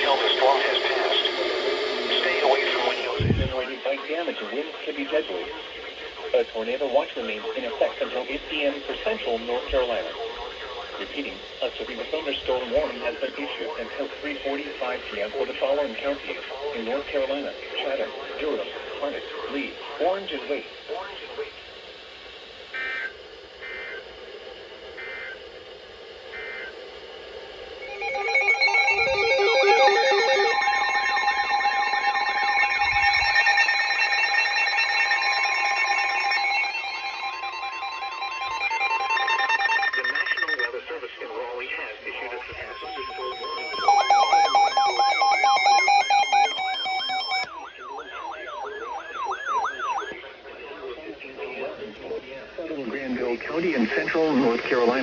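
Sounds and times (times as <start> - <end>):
chirping digital data tones: 3.2 - 3.7, 27.8 - 40.8, 41.6 - 50.1
warbling electronic alert tones: 3.2 - 3.7, 27.8 - 40.7, 41.9 - 50.1.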